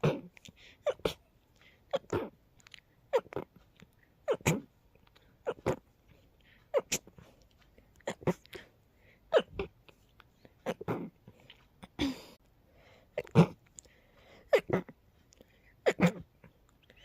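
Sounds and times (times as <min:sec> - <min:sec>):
person sneezing: 0:00.0 - 0:01.3, 0:01.9 - 0:02.4, 0:04.2 - 0:04.7, 0:06.7 - 0:07.2, 0:09.3 - 0:09.7, 0:14.5 - 0:15.0, 0:15.8 - 0:16.3.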